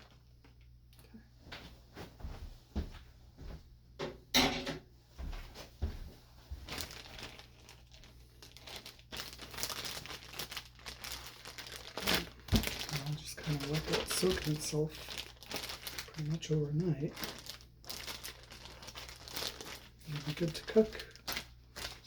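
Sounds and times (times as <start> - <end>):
plastic bag crinkling: 0.0 - 0.7, 6.6 - 22.0.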